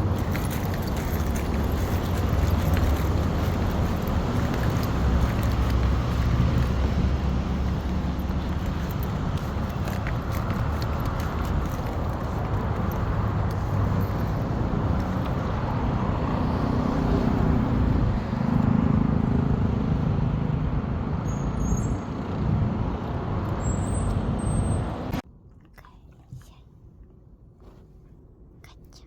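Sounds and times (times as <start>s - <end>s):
vehicle engine passing: 0.0s - 25.2s
road traffic: 0.0s - 25.5s.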